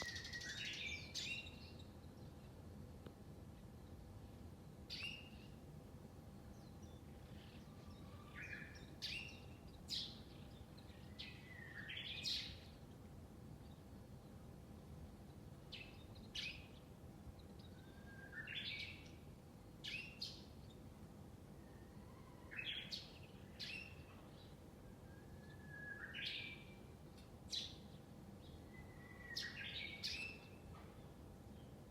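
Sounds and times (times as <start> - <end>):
faint steady background hum: 0.0 - 31.9.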